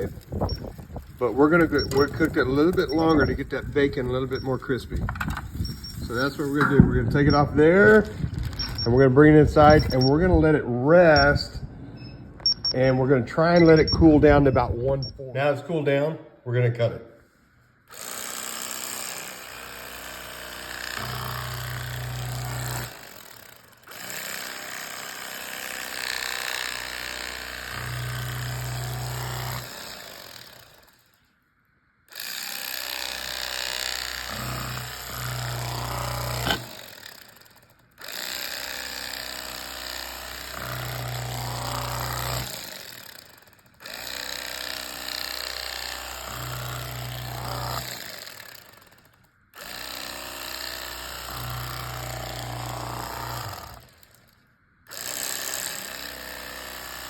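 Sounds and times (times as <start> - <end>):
electric carving knife buzzing: 0.0 - 7.5, 17.9 - 30.9, 32.1 - 37.4, 38.0 - 49.0, 49.6 - 54.2, 54.9 - 57.0.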